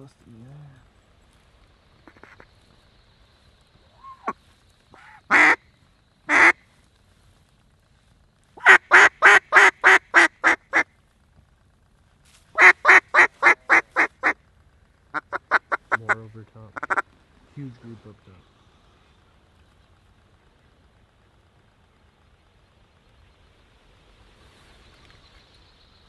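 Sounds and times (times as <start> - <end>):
duck call quacks: 2.0 - 2.4, 5.0 - 5.6, 6.3 - 6.6, 8.6 - 10.8, 12.6 - 14.4, 16.8 - 17.0.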